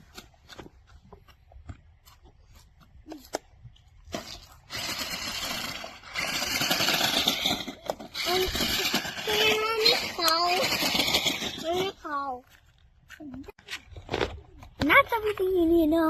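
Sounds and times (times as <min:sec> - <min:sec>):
toy truck electric motor and gears: 0:04.1 - 0:12.6.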